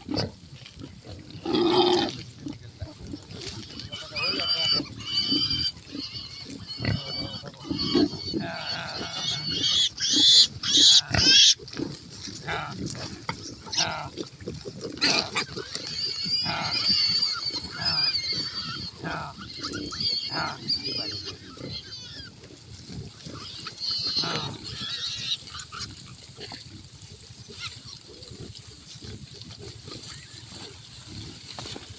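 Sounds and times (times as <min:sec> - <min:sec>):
farm animals low calls: 0:00.0 - 0:31.9
high-pitched animal cries: 0:03.7 - 0:11.6, 0:15.0 - 0:22.4, 0:23.2 - 0:26.0
low grunting: 0:06.8 - 0:09.8, 0:12.2 - 0:15.4, 0:16.4 - 0:17.0, 0:18.9 - 0:21.8.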